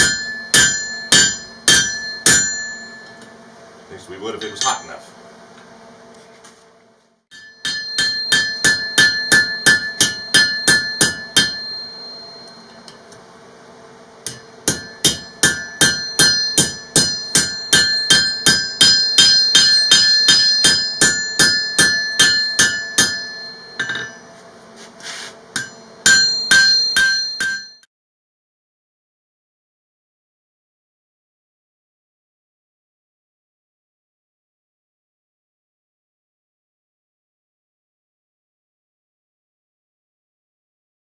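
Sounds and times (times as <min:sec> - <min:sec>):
hammer striking steel on anvil: 0:00.0 - 0:03.4, 0:04.3 - 0:05.1, 0:07.3 - 0:13.2, 0:14.2 - 0:24.4, 0:25.2 - 0:27.9.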